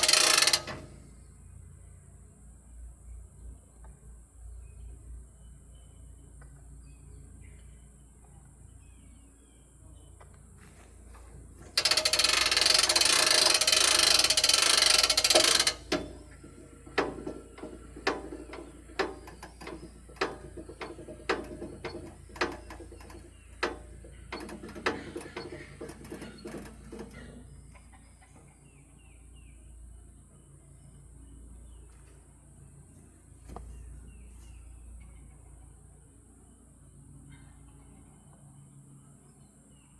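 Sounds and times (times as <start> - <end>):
sharp metallic clicks: 0.0 - 1.0, 11.6 - 27.4.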